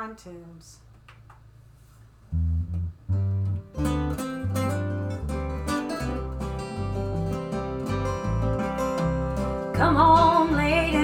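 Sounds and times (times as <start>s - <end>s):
acoustic guitar country song: 3.4s - 11.0s.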